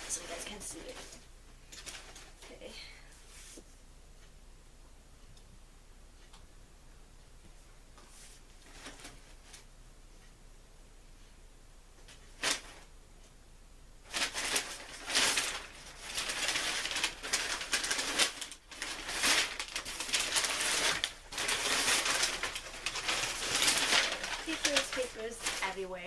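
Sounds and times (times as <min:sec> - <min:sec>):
packing paper crumpling: 0:14.1 - 0:26.0.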